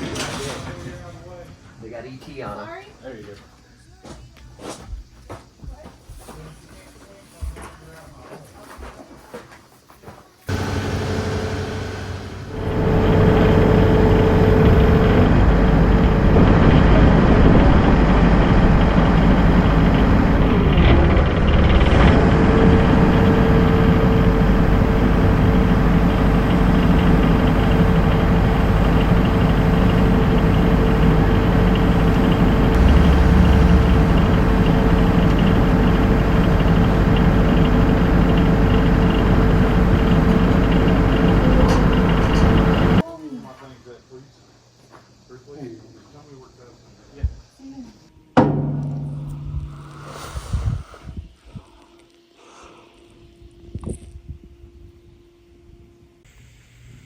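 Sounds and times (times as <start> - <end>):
engine running: 10.5 - 43.0
engine whine: 10.5 - 43.0.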